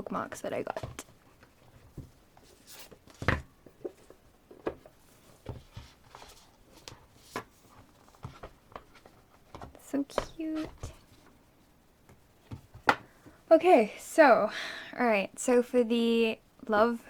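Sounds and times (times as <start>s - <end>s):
paper rustling: 5.1s - 11.3s
knocks and clicks of cd case: 12.1s - 13.1s.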